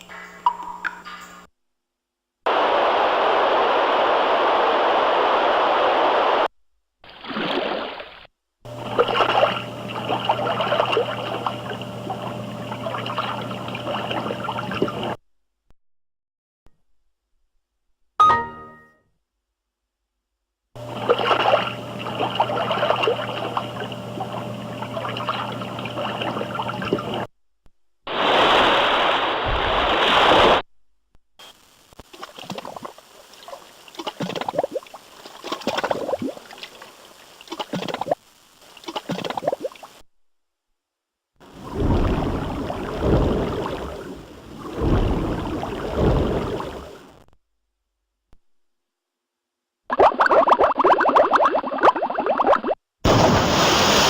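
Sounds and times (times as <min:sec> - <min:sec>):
loud rush of water: 0:02.5 - 0:06.5, 0:28.1 - 0:30.6, 0:53.1 - 0:54.0
water splashing and trickling: 0:07.1 - 0:15.2, 0:32.1 - 0:39.9, 0:41.6 - 0:47.1.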